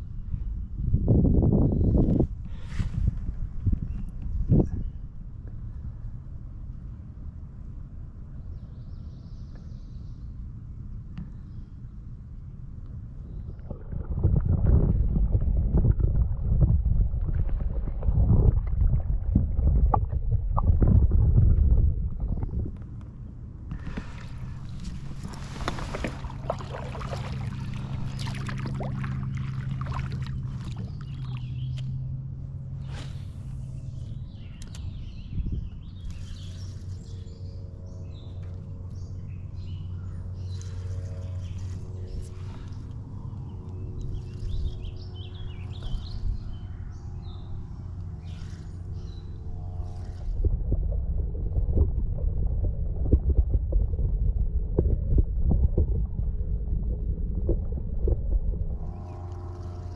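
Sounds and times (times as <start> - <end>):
wind on microphone: 0.0 - 6.5, 13.0 - 59.9
steady low hum: 0.0 - 59.9
water against hull: 12.8 - 59.9
small birds chirping: 30.5 - 32.0, 32.9 - 50.2.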